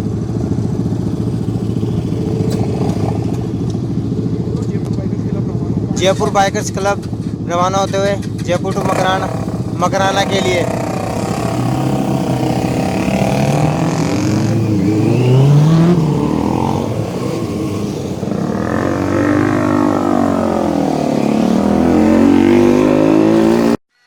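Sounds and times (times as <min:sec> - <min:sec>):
motorcycle engines revving: 0:00.0 - 0:23.8.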